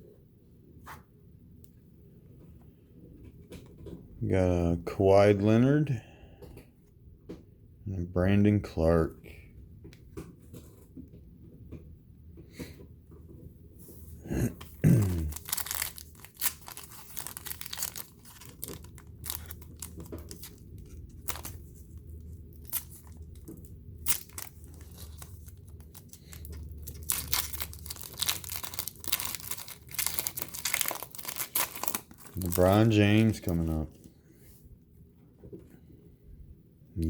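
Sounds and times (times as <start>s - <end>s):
card pack wrapper tearing and crinkling: 14.6s - 33.7s.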